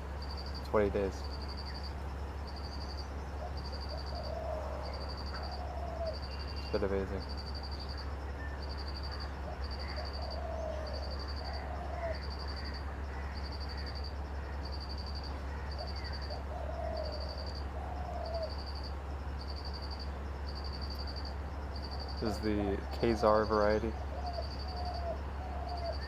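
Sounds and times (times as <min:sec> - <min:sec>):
insect chirping trills: 0:00.0 - 0:26.0
steady low hum: 0:00.0 - 0:26.0
animal calls: 0:02.6 - 0:18.8, 0:22.0 - 0:26.0.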